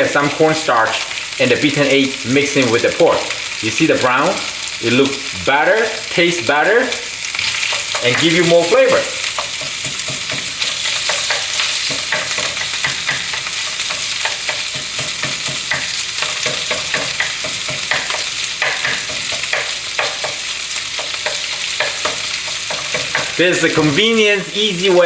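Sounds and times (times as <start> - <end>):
meat sizzling in a frying pan: 0.0 - 25.0
spatula clicking and scraping: 6.9 - 23.7.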